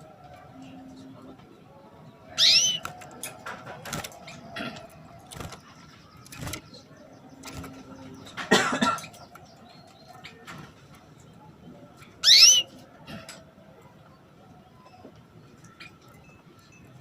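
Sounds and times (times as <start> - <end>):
canary chirping: 2.3 - 8.4, 12.2 - 12.8.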